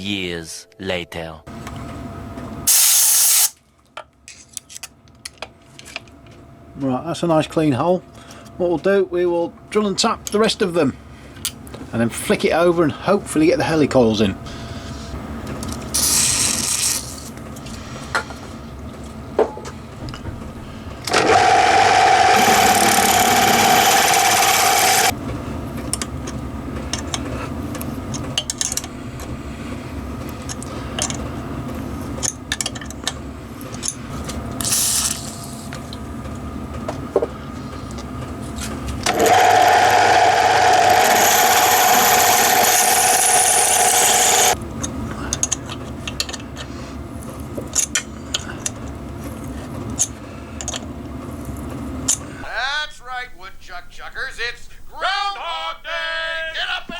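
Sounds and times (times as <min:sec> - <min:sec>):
electric drill whining: 0:21.1 - 0:25.1, 0:39.1 - 0:44.6.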